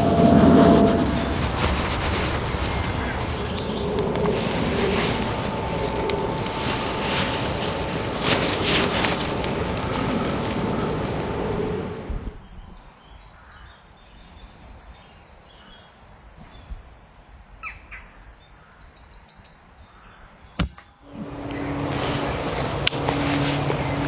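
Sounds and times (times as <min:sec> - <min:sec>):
small birds chirping: 0:00.0 - 0:12.1, 0:21.1 - 0:24.0
steady noise with low hum: 0:00.0 - 0:12.4, 0:21.1 - 0:24.0.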